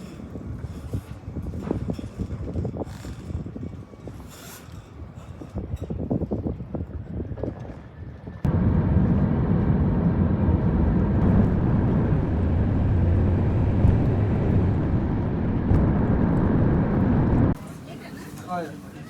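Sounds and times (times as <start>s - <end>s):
steady low rumble: 8.4s - 17.6s.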